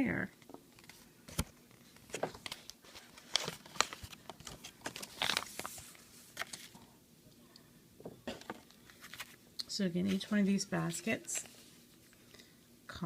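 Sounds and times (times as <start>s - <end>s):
packaging crinkling: 1.8s - 6.8s.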